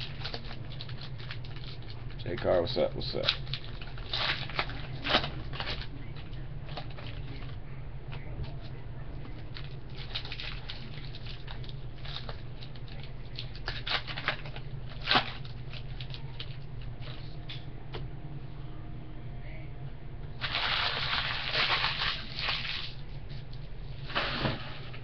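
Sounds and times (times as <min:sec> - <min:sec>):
trading cards crinkling and clicking: 0:00.0 - 0:17.6
low electrical hum: 0:00.0 - 0:25.0.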